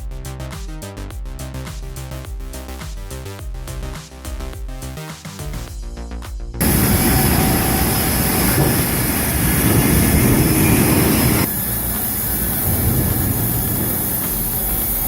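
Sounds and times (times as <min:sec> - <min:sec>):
sawmill machinery running: 0:06.6 - 0:15.0.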